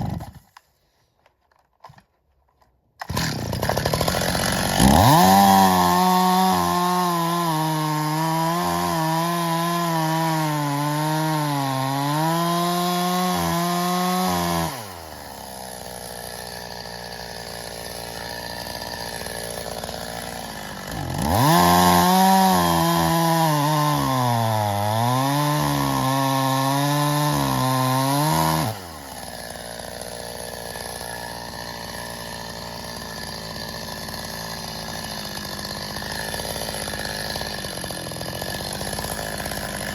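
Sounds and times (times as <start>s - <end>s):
chainsaw cutting logs: 0.0s - 39.9s
chainsaw idling: 3.0s - 39.9s.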